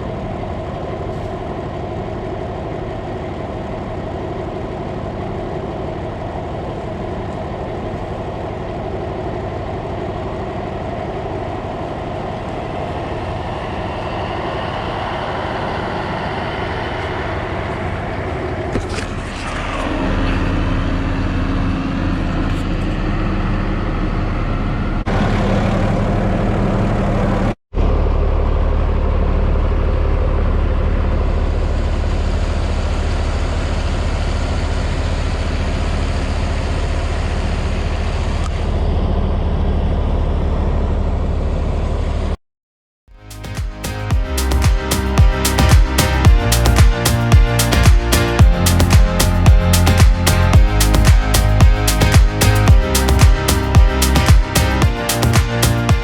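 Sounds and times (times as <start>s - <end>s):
tractor engine running: 0.0s - 42.2s.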